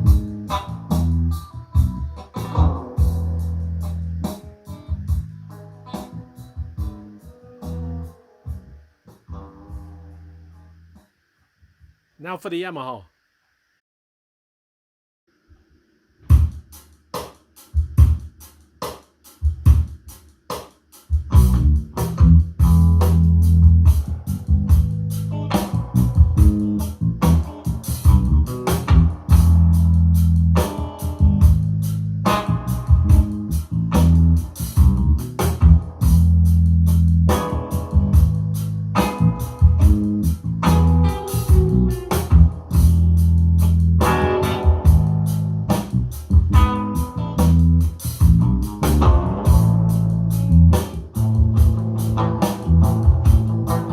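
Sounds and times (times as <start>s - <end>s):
drum hits: 16.3s - 22.9s, 39.0s - 43.0s, 50.8s - 53.9s.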